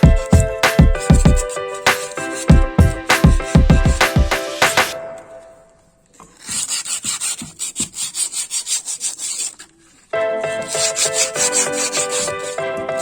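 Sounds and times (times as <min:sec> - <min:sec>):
rubbing metal part by hand: 0:00.0 - 0:04.2, 0:06.3 - 0:13.0
background music: 0:00.0 - 0:05.8, 0:10.1 - 0:13.0.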